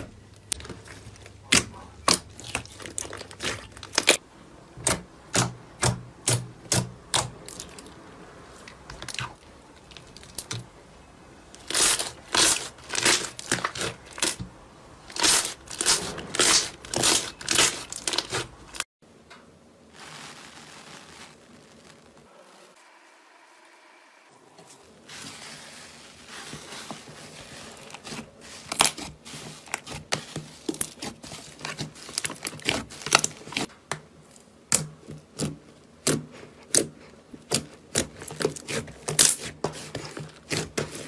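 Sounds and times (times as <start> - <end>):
faint hiss: 19.1 - 27.8.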